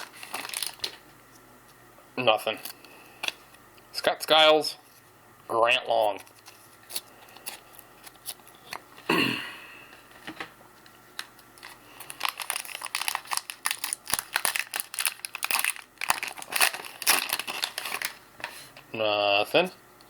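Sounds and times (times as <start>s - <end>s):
wrapper crinkling: 0.0s - 1.0s, 11.2s - 18.3s.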